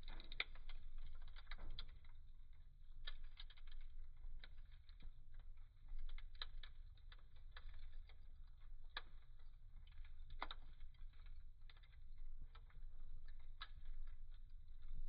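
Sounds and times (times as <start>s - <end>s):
wood fire crackling and popping: 0.0s - 15.0s.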